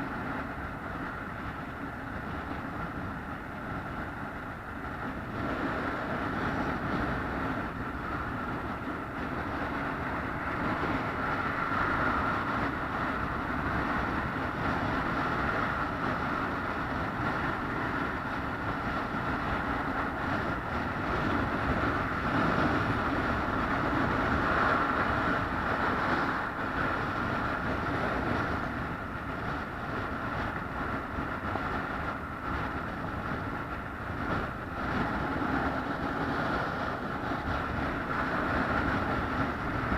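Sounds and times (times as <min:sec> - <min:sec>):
constant whine: 0:00.0 - 0:39.9
moving vehicle drone: 0:00.0 - 0:39.9.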